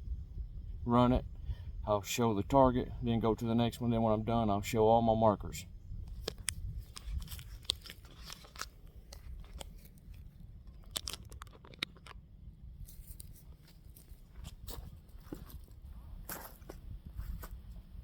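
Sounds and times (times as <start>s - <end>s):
low steady rumble: 0.0s - 18.0s
handling clicks and rustles: 6.0s - 15.7s
footsteps: 12.9s - 17.8s.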